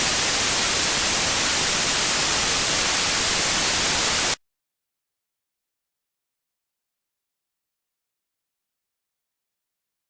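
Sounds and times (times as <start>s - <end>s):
television static hiss: 0.0s - 4.4s.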